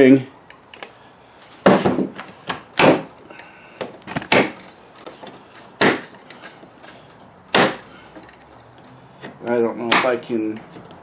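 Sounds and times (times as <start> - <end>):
tool clicking and scraping: 3.4 - 9.4.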